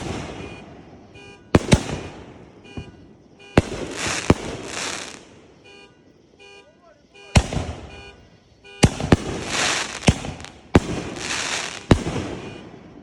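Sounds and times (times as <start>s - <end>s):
firework crackling hiss: 0.0s - 0.6s, 3.2s - 5.6s, 8.8s - 13.0s
firework bangs: 0.0s - 6.2s, 7.2s - 13.0s.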